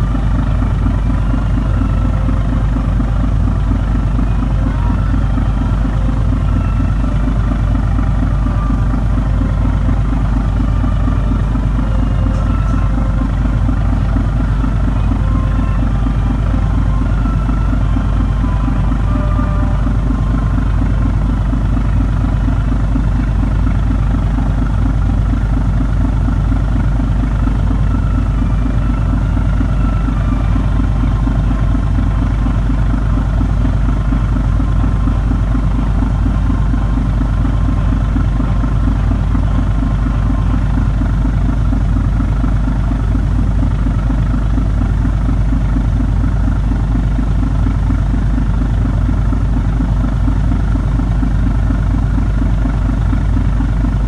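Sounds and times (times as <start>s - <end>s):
boat engines fluttering: 0.0s - 54.0s.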